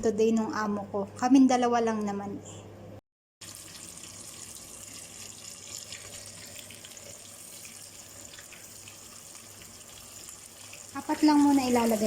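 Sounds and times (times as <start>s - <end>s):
chicken sizzling in hot oil: 3.4s - 12.0s.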